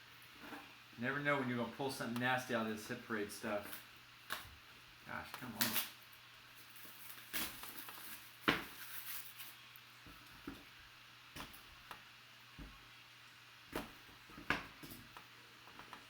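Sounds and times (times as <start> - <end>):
cards and packaging rustling: 5.1 - 5.9, 6.5 - 9.6.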